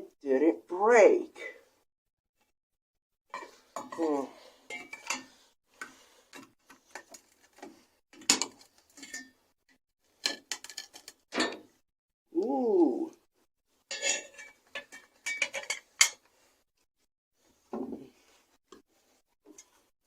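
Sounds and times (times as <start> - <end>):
hard objects clinking and knocking: 10.2 - 11.5.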